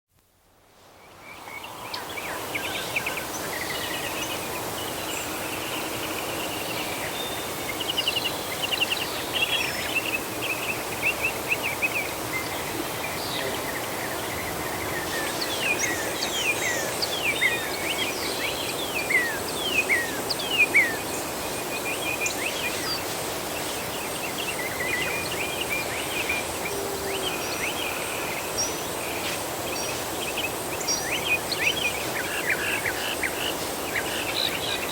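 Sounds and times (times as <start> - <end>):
steady background hiss: 0.2 - 34.9
songbirds chirping: 0.8 - 34.9
high insect whine: 1.2 - 34.9.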